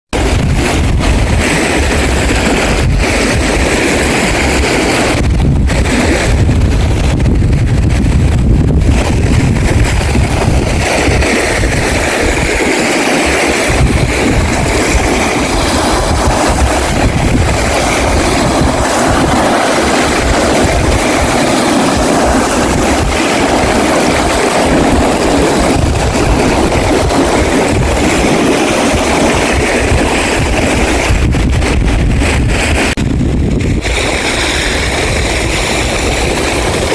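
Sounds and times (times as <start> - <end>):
rushing water: 0.1 - 36.9
wind buffeting microphone: 0.1 - 36.9.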